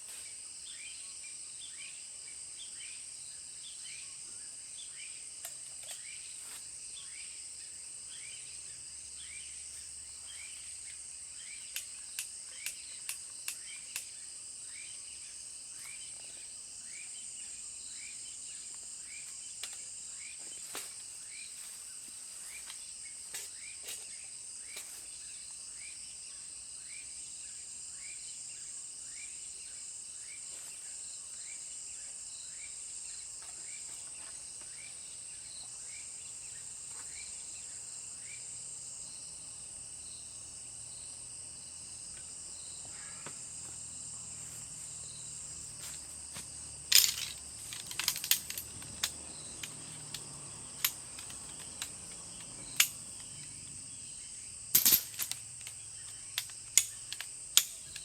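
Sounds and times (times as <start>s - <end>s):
insects chirring: 0.0s - 58.0s
sharp clicks: 56.4s - 58.0s.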